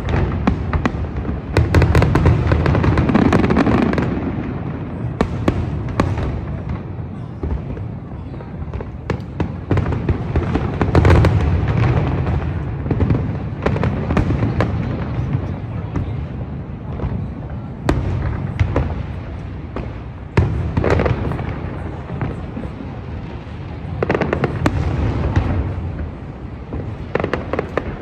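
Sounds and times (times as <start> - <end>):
fireworks bangs and crackles: 0.0 - 28.0.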